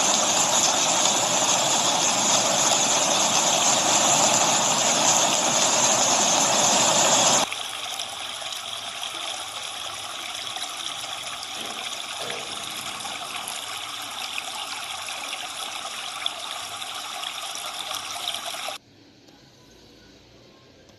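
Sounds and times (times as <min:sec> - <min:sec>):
waterfall rushing: 0:00.0 - 0:07.5
rain: 0:00.0 - 0:18.8.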